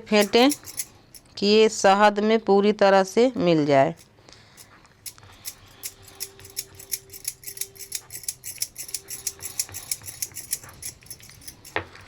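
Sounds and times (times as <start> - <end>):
spoon clicking against bowl: 5.1 - 11.8.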